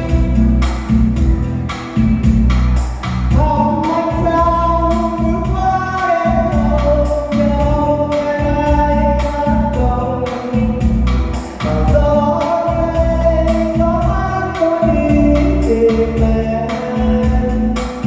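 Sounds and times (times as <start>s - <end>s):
person singing: 0.0s - 2.6s, 3.3s - 18.0s
backing band playing: 0.0s - 18.0s.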